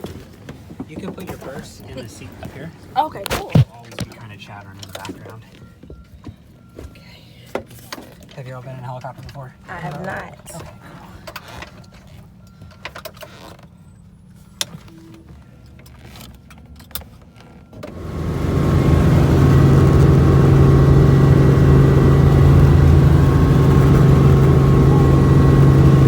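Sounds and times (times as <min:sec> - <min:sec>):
helicopter engine and rotor drone: 0:17.8 - 0:26.0.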